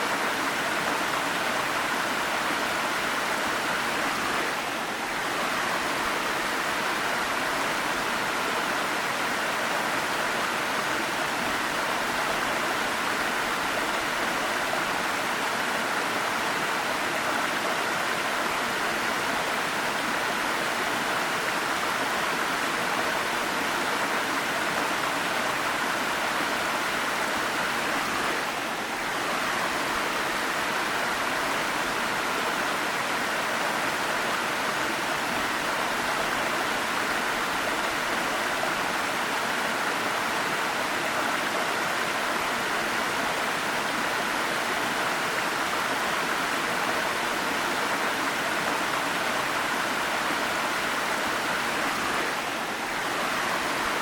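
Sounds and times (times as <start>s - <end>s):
waterfall rushing and splashing: 0.0s - 54.0s.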